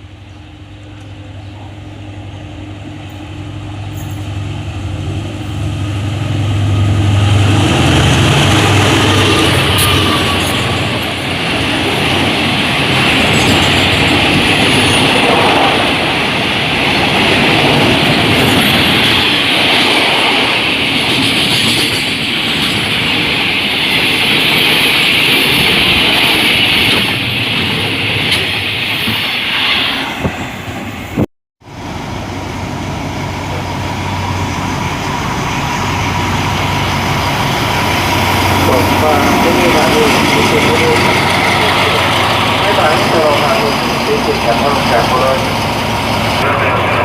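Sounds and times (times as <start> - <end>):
train cars rolling on rails: 0.0 - 47.0
steady engine hum: 31.6 - 47.0.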